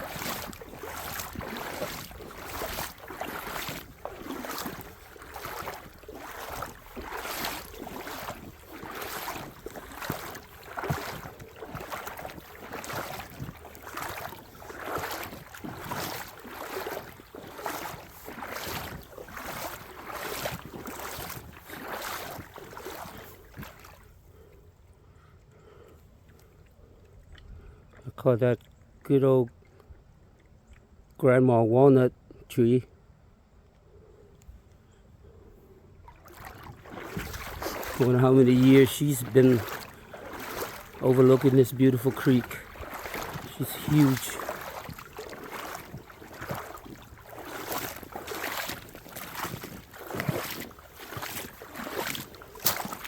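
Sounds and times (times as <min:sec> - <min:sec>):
footsteps walking: 0:00.0 - 0:24.0, 0:36.2 - 0:53.0.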